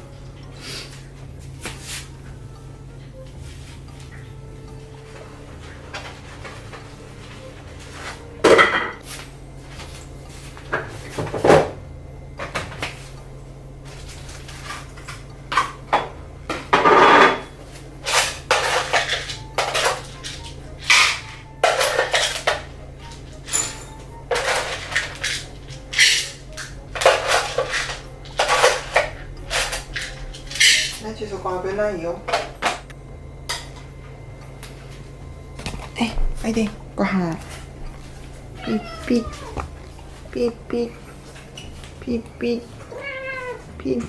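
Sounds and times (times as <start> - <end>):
dishes and cutlery clattering: 8.0 - 9.0, 14.6 - 31.0.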